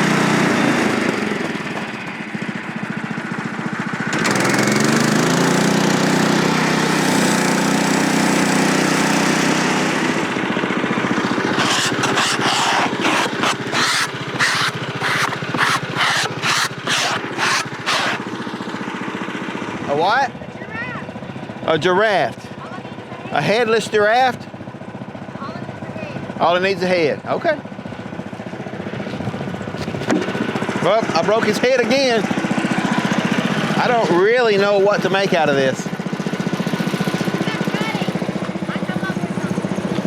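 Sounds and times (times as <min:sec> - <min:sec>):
saw blade hissing through log: 0:11.2 - 0:18.3
sharp rhythmic strokes: 0:11.2 - 0:18.3.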